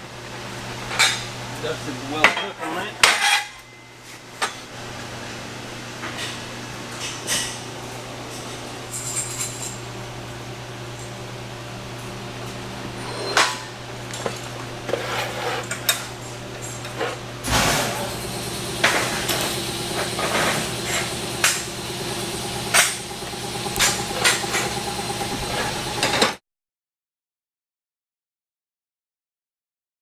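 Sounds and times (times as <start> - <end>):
steady machine noise: 17.2 - 26.4.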